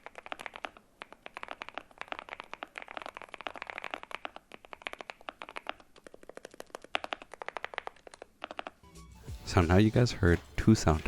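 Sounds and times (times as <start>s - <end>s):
fast keyboard typing: 0.0s - 8.8s.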